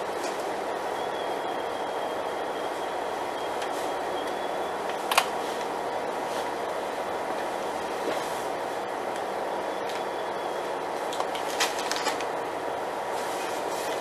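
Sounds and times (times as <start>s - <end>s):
diesel train engine drone: 0.0s - 14.0s.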